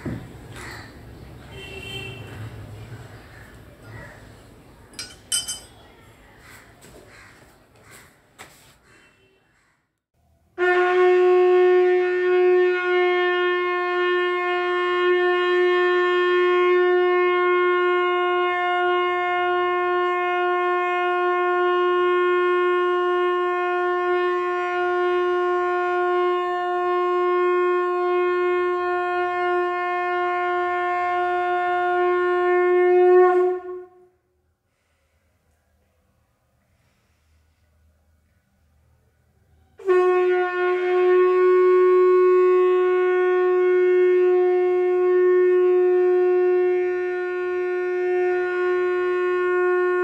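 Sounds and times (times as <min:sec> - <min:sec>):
horn blast: 0:10.6 - 0:34.3, 0:39.8 - 0:50.0.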